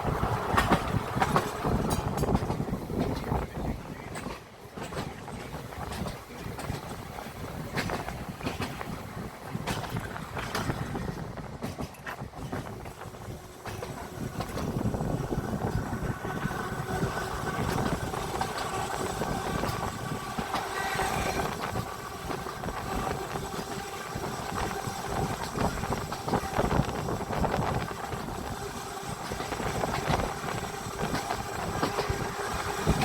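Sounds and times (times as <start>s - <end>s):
tram wheels knocking over rails: 0.0s - 16.0s
tram running noise with whine: 0.0s - 33.0s.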